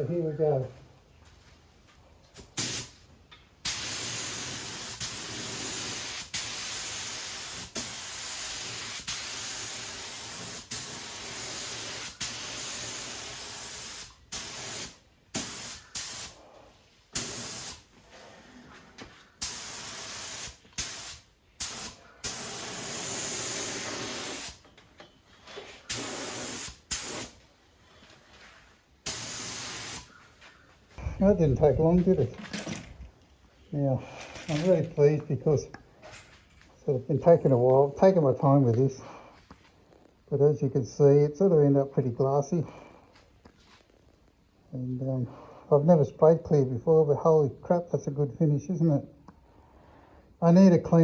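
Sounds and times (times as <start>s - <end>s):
paint spray gun hissing: 3.6s - 16.4s, 17.2s - 17.9s, 19.4s - 24.6s, 25.8s - 27.4s, 29.1s - 30.1s.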